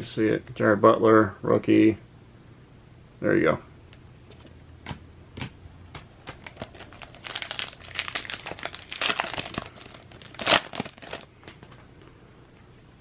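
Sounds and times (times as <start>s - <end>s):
card pack wrapper crinkling: 6.1s - 11.8s
wrapper tearing: 6.4s - 11.3s.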